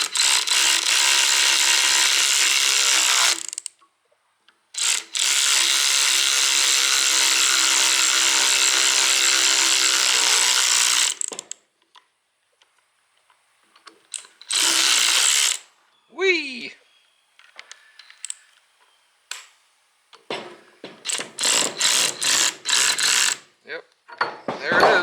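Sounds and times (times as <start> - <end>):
electric power tool driving bolts: 0.0 - 3.8, 4.8 - 11.6, 14.1 - 15.7, 20.4 - 23.5.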